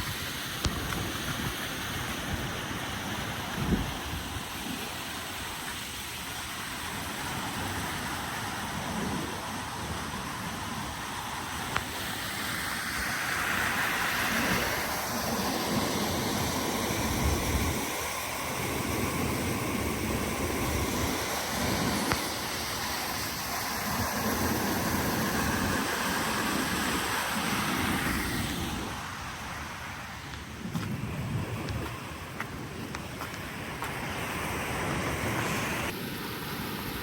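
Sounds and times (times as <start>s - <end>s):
wind buffeting microphone: 0.0s - 5.0s, 23.2s - 36.0s
water rushing: 0.0s - 37.0s.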